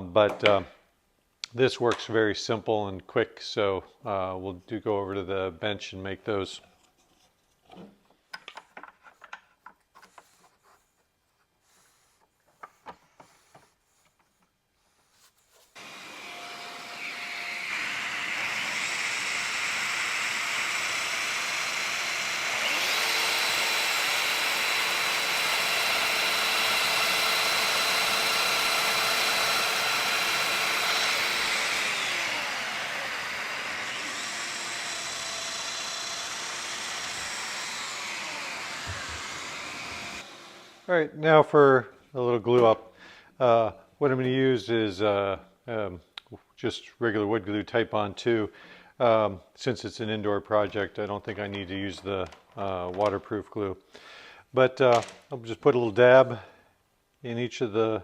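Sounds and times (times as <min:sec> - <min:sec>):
joiner motor whining: 0:15.8 - 0:40.8.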